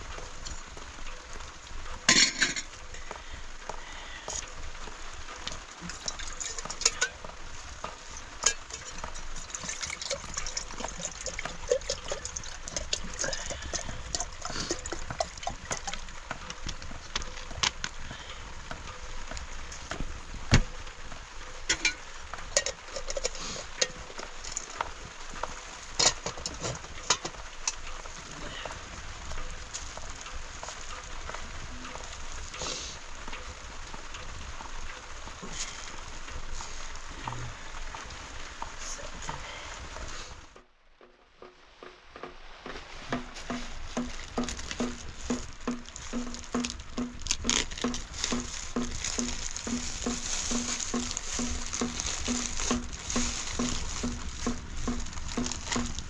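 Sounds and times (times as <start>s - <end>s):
cooking hiss: 0.0s - 40.6s, 41.4s - 56.0s
pots and utensils knocking: 43.1s - 56.0s.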